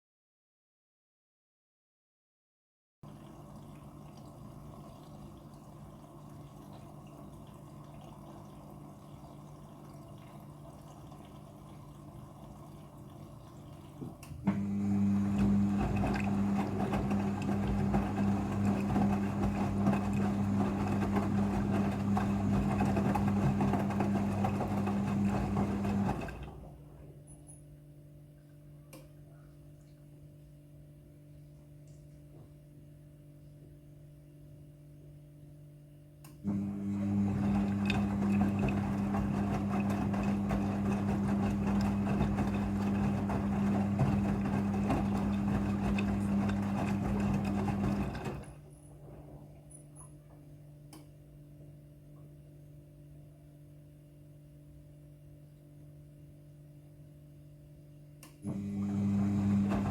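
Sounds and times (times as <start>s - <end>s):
washing machine water rushing: 3.0s - 27.0s, 36.4s - 49.8s, 58.4s - 59.9s
faint machine hum: 3.0s - 59.9s.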